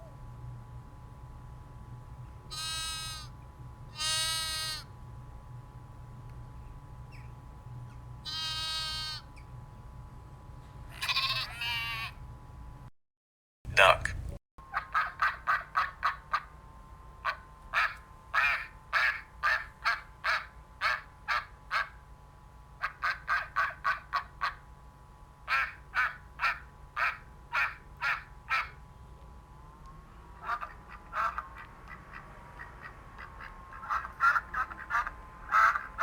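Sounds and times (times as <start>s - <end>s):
duck quacking: 2.5s - 3.3s, 14.7s - 16.6s, 17.2s - 22.0s, 22.8s - 24.6s, 25.5s - 28.8s, 30.4s - 36.0s.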